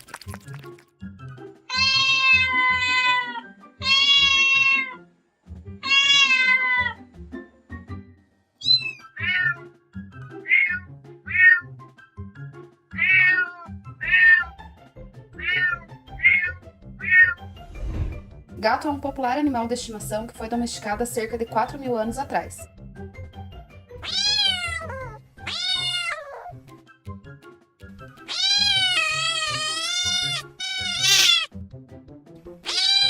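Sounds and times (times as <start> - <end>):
background music: 0.0 - 33.0
cat meowing: 1.7 - 5.0, 5.8 - 7.0, 8.6 - 9.6, 10.4 - 11.7, 12.9 - 14.5, 15.4 - 17.4, 24.0 - 26.6, 28.2 - 31.6, 32.6 - 33.0.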